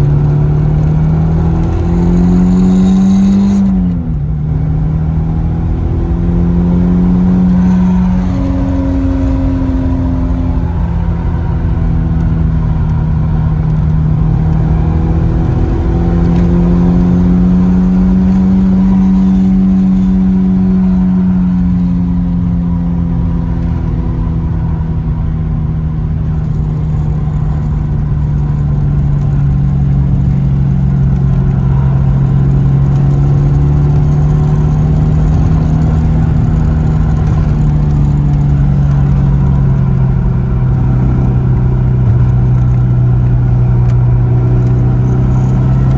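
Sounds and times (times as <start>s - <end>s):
car engine cruising: 0.0s - 45.9s.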